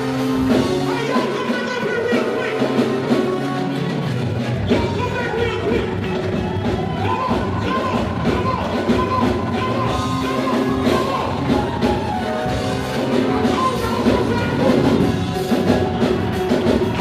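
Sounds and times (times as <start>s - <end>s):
live band with singing: 0.0s - 17.0s.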